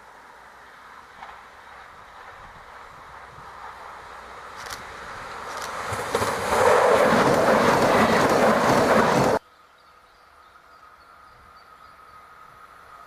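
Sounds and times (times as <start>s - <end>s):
train rushing past on track: 0.0s - 9.4s.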